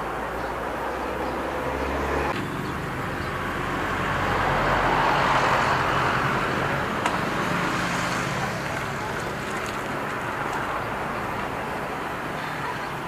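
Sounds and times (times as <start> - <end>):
vehicle passing: 0.0 - 12.3
road traffic: 0.0 - 13.0.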